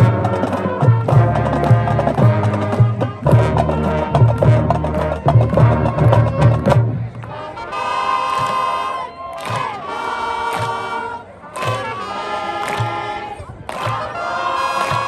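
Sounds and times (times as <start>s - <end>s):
marching band playing: 0.0s - 15.0s.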